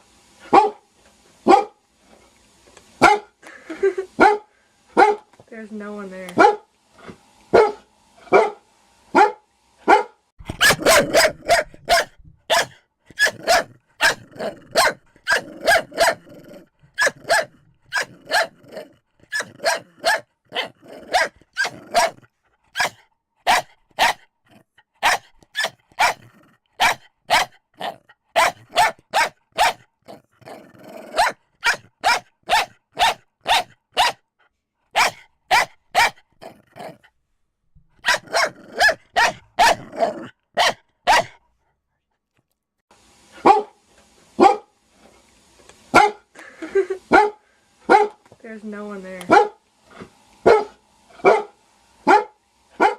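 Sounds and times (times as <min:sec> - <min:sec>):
dogs barking: 0:00.4 - 0:00.8, 0:01.5 - 0:01.8, 0:03.0 - 0:03.4, 0:04.1 - 0:05.3, 0:06.4 - 0:06.7, 0:07.5 - 0:24.3, 0:25.0 - 0:30.2, 0:31.0 - 0:34.2, 0:35.0 - 0:37.0, 0:38.0 - 0:41.4, 0:43.4 - 0:43.8, 0:44.4 - 0:44.7, 0:45.9 - 0:46.2, 0:47.1 - 0:48.2, 0:49.3 - 0:49.6, 0:50.4 - 0:52.9
low dog growl: 0:15.4 - 0:16.8, 0:30.1 - 0:31.2.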